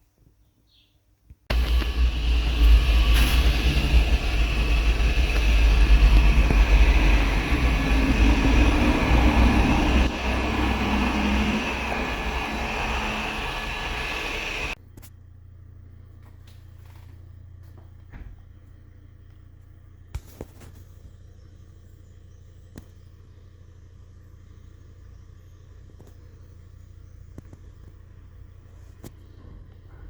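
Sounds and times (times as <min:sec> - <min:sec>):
car engine running: 0:01.5 - 0:14.8.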